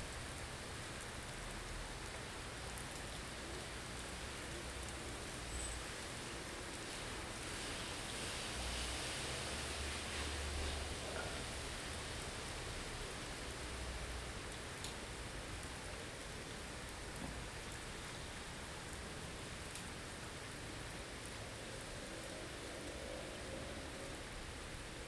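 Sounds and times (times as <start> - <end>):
hiss of wind-driven snow: 5.0 - 14.2, 20.1 - 25.0
faint ticks: 14.5 - 15.0, 19.7 - 19.9.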